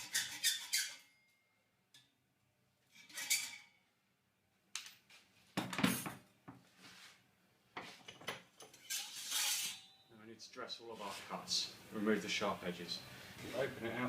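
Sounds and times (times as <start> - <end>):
metallic clinks and scrapes: 0.0 - 1.4, 2.9 - 3.8, 8.0 - 10.1.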